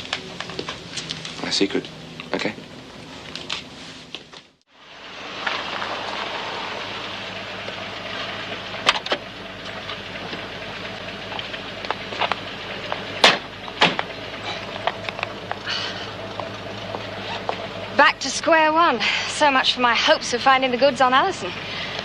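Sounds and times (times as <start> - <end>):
sharp knocks: 13.2 - 14.1.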